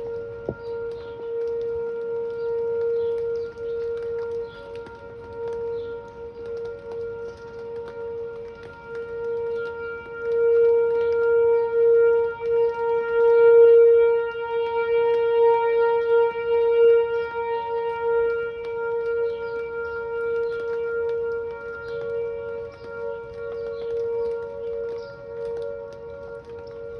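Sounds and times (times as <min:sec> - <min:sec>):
tornado siren steady tone: 0:00.0 - 0:26.9.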